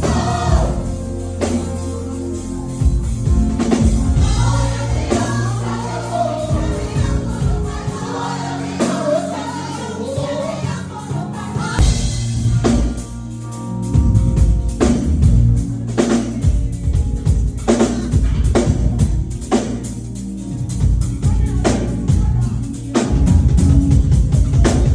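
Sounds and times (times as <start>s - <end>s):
heavy drum kit hits: 0.0s - 2.0s, 2.8s - 5.8s, 11.7s - 13.3s
voices singing gospel over a band: 0.0s - 20.1s.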